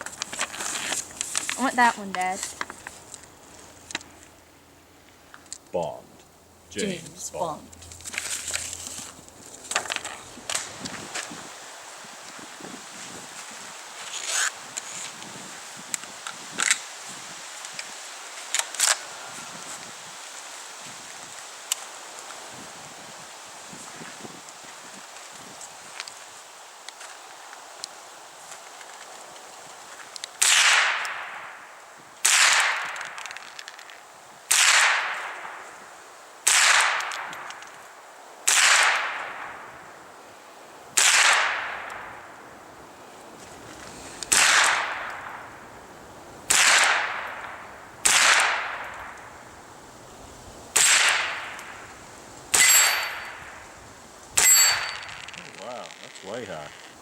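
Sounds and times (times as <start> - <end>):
rifle shots echoing: 30.4 - 31.6, 32.2 - 33.0, 34.5 - 35.6, 36.4 - 37.4, 38.5 - 39.6, 41.0 - 42.0, 44.3 - 45.5, 46.5 - 49.1, 50.7 - 51.7, 52.5 - 53.4.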